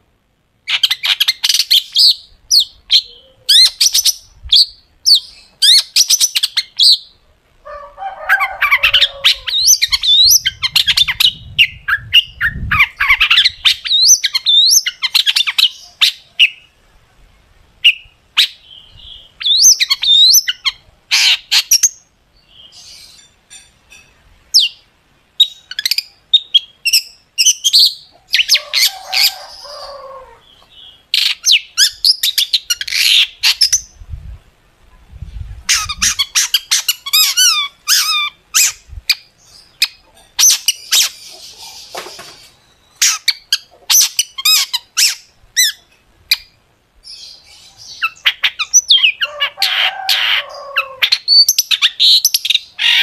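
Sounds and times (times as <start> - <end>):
harsh grating bird chatter: 35.7 - 45.8.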